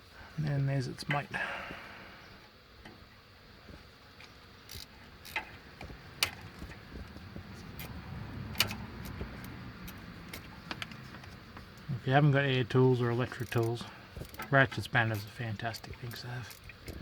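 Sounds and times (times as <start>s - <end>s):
ratchet spanner clicking: 4.7s - 5.5s, 7.7s - 11.3s, 13.3s - 17.0s.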